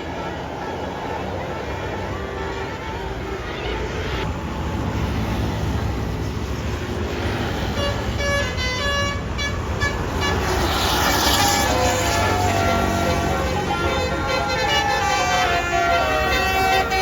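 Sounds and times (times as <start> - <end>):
bus musical horn tune: 0.0 - 4.3, 7.7 - 17.0
bus engine rumble: 0.0 - 17.0.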